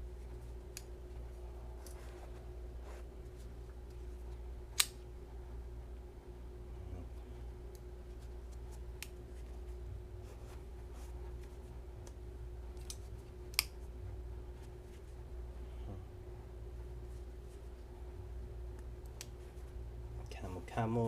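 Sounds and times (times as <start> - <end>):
steady low hum: 0.0 - 21.0
folding knife blades clicking: 12.8 - 13.8.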